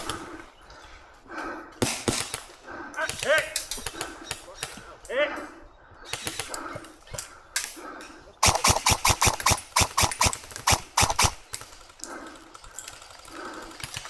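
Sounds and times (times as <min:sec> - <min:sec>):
airsoft gun rapid shots: 0:08.4 - 0:11.8.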